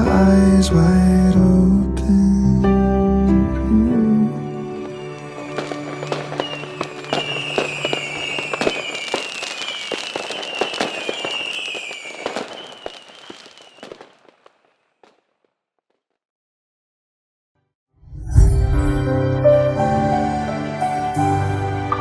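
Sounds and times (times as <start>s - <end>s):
song: 0.0s - 10.2s
short falling whistles: 4.8s - 14.7s
fireworks crackling and popping: 4.8s - 16.1s.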